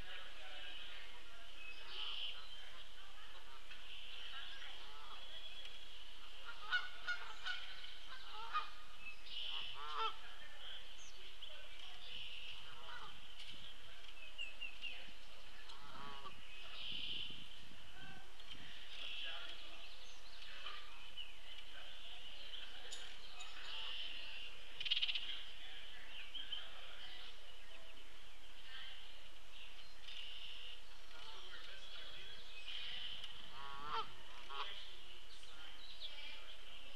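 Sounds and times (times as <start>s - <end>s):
songbirds chirping and singing: 0.0s - 36.9s
geese honking: 6.2s - 10.8s, 12.6s - 13.2s, 15.6s - 17.4s, 32.8s - 34.9s.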